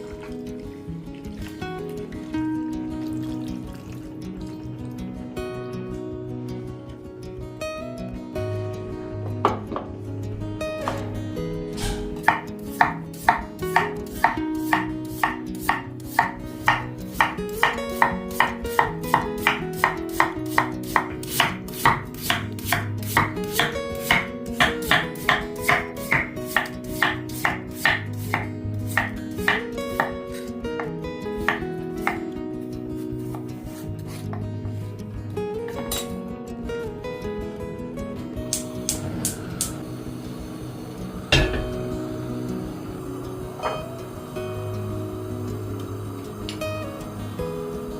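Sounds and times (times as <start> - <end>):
background music: 0.0 - 47.9
knife chopping on cutting board: 11.8 - 30.4, 31.4 - 32.2.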